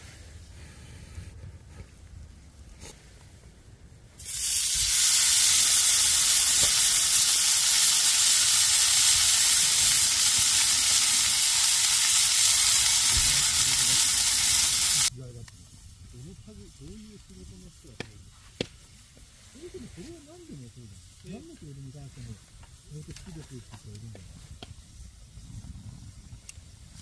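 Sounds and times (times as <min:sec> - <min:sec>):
loud high-pitched hiss: 0:04.2 - 0:18.3, 0:18.9 - 0:24.0.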